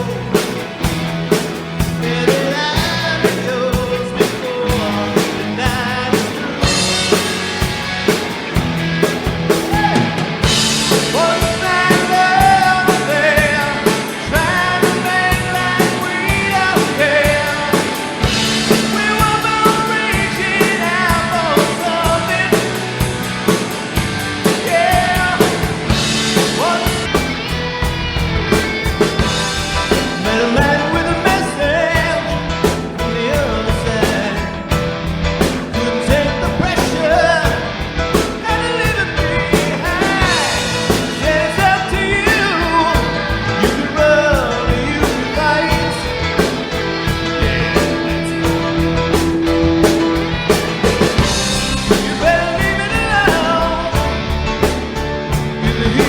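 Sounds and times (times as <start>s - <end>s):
lead vocal singing: 0.0s - 27.7s, 29.0s - 56.0s
rock band playing: 0.0s - 56.0s.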